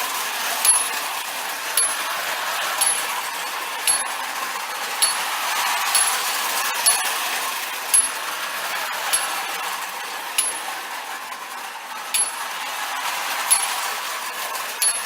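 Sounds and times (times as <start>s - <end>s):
clockwork motor whirring: 0.0s - 15.0s
tin toy cars rattling: 0.0s - 15.0s.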